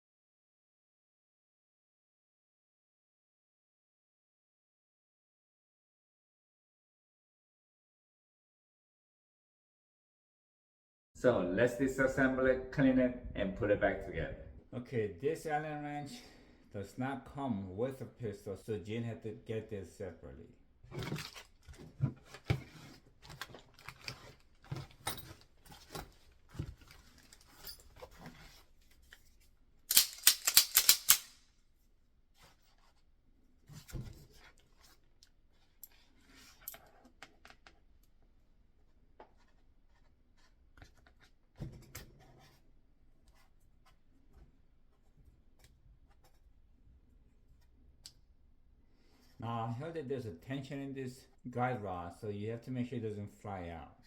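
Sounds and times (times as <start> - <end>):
metal parts clicking and scraping: 29.9 - 31.4.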